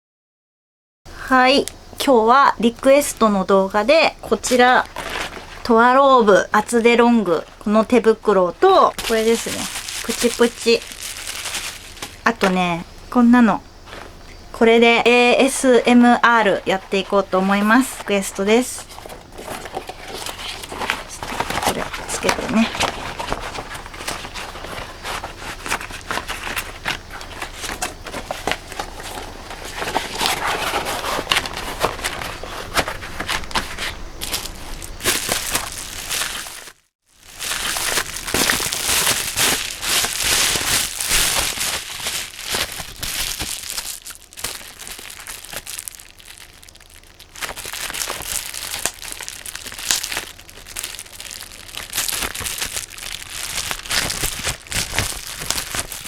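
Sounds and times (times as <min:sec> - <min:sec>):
rubber gloves crinkling and squeaking: 0:01.1 - 0:56.0
bubble wrap crackling: 0:01.6 - 0:56.0.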